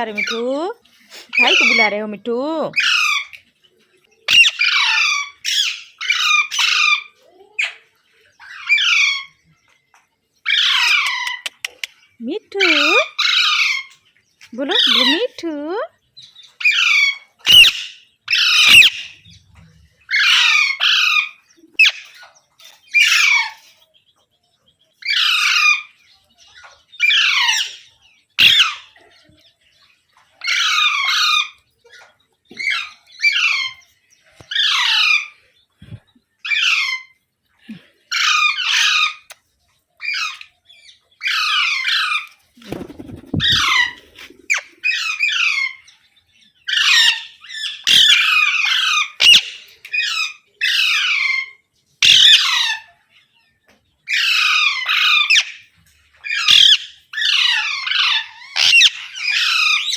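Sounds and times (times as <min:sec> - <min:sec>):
parrot screeching squawks: 0:01.3 - 0:01.9, 0:02.8 - 0:03.4, 0:04.3 - 0:07.8, 0:08.5 - 0:09.4, 0:10.5 - 0:11.6, 0:12.6 - 0:13.9, 0:14.8 - 0:15.3, 0:16.6 - 0:19.1, 0:20.1 - 0:22.0, 0:27.0 - 0:28.9, 0:30.4 - 0:31.6, 0:32.6 - 0:33.8, 0:34.5 - 0:35.3, 0:36.4 - 0:37.2, 0:38.1 - 0:39.4, 0:41.2 - 0:42.3, 0:43.4 - 0:45.8, 0:46.7 - 0:52.9, 0:54.1 - 0:55.6, 0:56.2 - 0:59.9.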